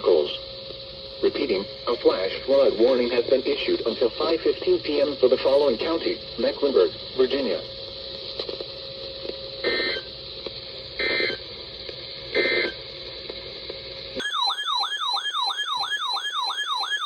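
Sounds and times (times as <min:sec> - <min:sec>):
radio static: 0:01.2 - 0:13.6
digital data tone bursts: 0:09.6 - 0:10.1, 0:11.0 - 0:11.4, 0:12.3 - 0:12.8
warbling siren alert tone: 0:14.2 - 0:17.0.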